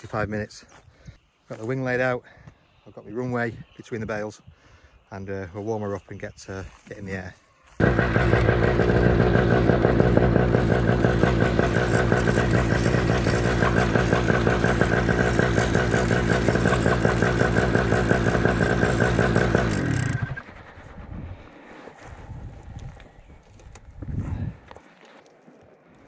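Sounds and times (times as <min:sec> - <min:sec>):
paramotor engine running: 0:07.8 - 0:21.0.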